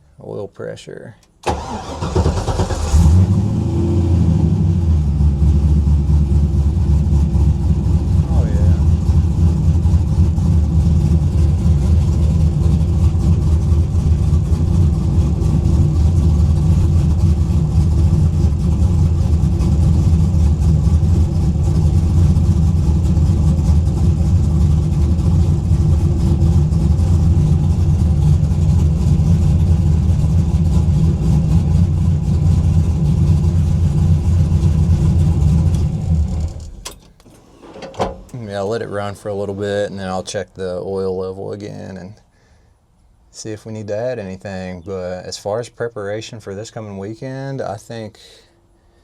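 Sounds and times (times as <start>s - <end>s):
car engine idling: 1.4s - 41.0s.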